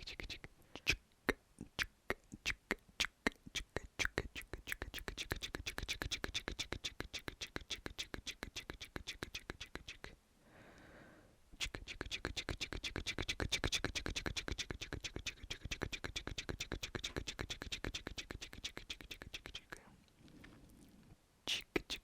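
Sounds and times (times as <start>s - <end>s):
whispered mouth clicks: 0.0s - 10.2s, 11.6s - 22.0s
soft breath: 10.4s - 11.5s, 19.6s - 21.7s.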